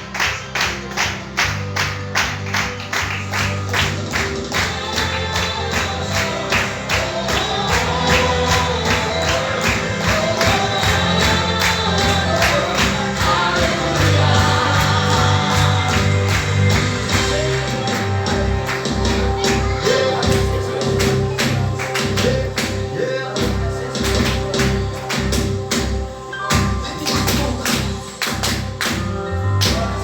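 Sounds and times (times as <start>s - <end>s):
fast percussive beat: 1.5s - 30.0s
voices singing: 4.5s - 28.2s.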